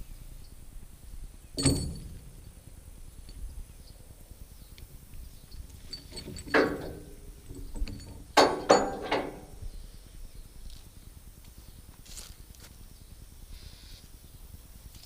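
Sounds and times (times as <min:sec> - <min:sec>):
log chains clanking against metal: 0:01.6 - 0:04.2, 0:05.3 - 0:09.8.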